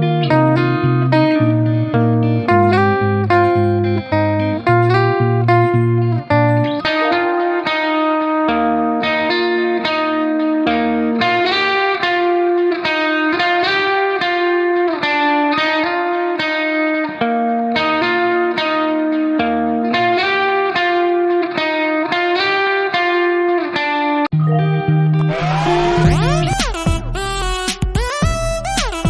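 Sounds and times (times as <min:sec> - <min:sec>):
plucked guitar piece: 0:00.0 - 0:28.1.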